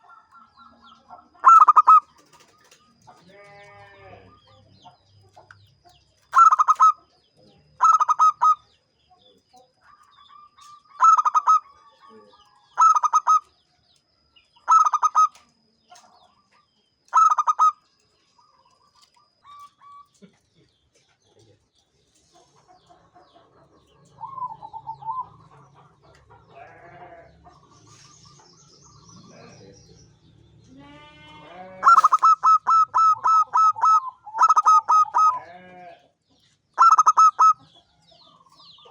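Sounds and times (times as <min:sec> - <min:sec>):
dove cooing: 0:01.4 - 0:02.8, 0:06.3 - 0:07.0, 0:07.8 - 0:08.6, 0:09.9 - 0:13.5, 0:14.7 - 0:15.4, 0:17.1 - 0:17.8, 0:24.0 - 0:26.2, 0:31.8 - 0:35.4, 0:36.8 - 0:37.7.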